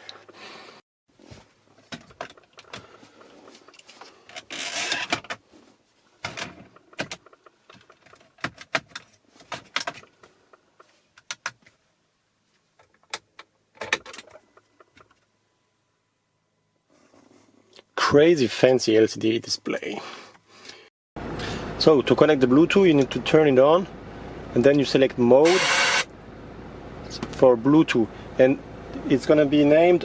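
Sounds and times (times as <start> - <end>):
rustling: 1.1 - 8.4.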